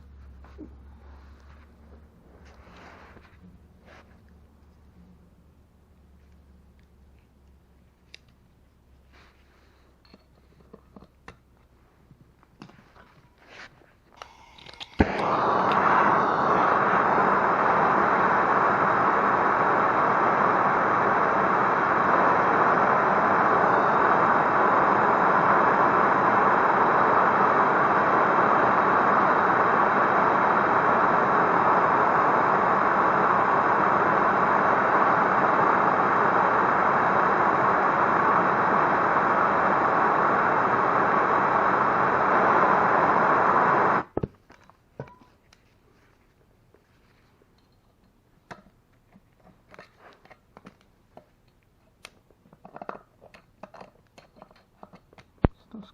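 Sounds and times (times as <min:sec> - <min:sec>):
gas torch flame rushing: 0:00.3 - 0:04.4, 0:13.4 - 0:44.2
torch igniter click: 0:14.2 - 0:17.1.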